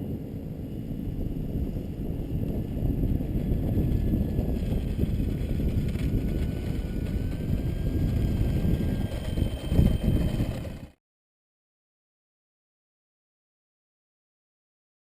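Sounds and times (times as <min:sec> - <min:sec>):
electric motor and propeller whine: 0:00.0 - 0:11.0
wind buffeting microphone: 0:00.0 - 0:11.0.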